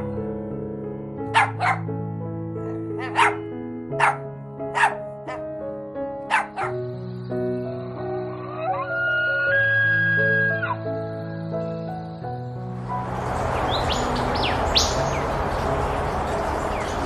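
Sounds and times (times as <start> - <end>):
background music with held notes: 0.0 - 17.0
dog barking in sharp yaps: 1.4 - 1.8, 3.0 - 3.4, 4.0 - 4.2, 4.8 - 5.4, 6.3 - 6.7.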